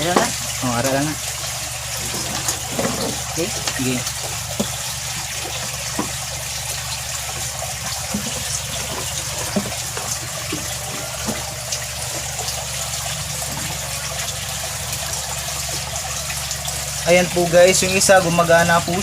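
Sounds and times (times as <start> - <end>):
aquarium air pump humming: 0.0 - 19.0.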